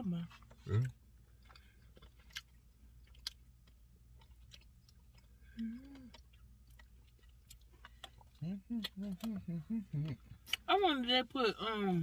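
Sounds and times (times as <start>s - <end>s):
short hummed voice sound: 8.4s - 10.4s.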